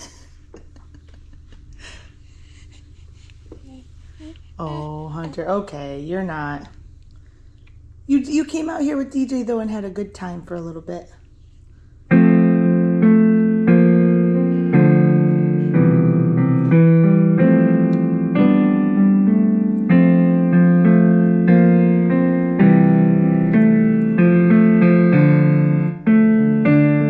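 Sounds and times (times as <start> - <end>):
piano-like keyboard tune: 12.1 - 27.0.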